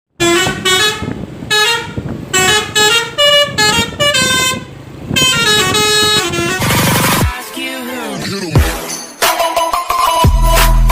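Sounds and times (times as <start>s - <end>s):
musical bus horn notes: 0.2s - 7.9s.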